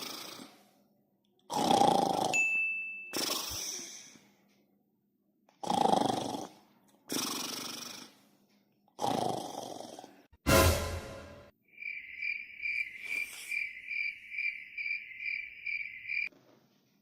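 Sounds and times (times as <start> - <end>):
man snoring loudly: 0.0 - 0.5, 1.5 - 2.4, 5.6 - 8.1, 9.0 - 10.1.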